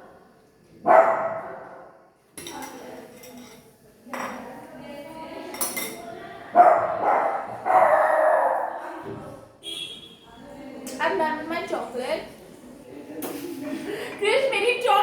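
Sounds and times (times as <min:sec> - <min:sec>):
cutlery and dishes clinking: 0:02.4 - 0:04.5, 0:05.5 - 0:06.2.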